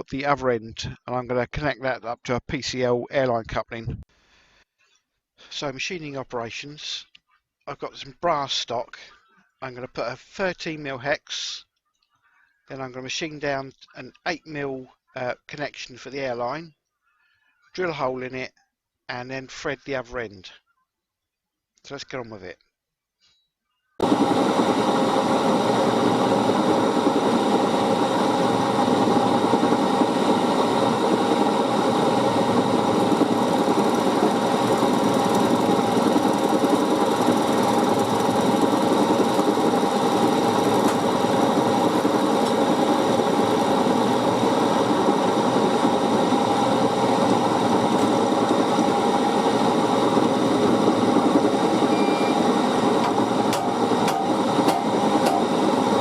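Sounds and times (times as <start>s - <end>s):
metal lathe running: 24.0s - 56.0s.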